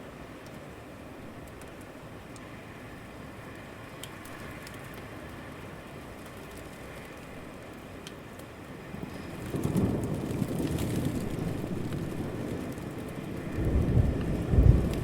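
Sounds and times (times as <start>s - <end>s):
steady rain hiss: 0.0s - 15.0s.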